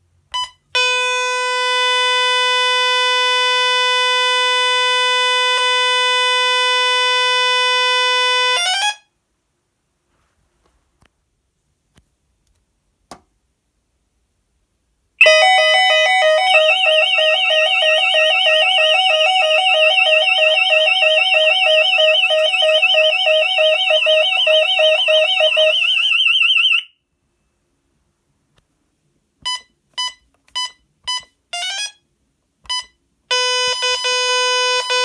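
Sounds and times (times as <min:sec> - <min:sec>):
fast high alarm warble: 0:15.2 - 0:26.9
lower two-tone alarm: 0:15.2 - 0:27.0, 0:32.7 - 0:35.0.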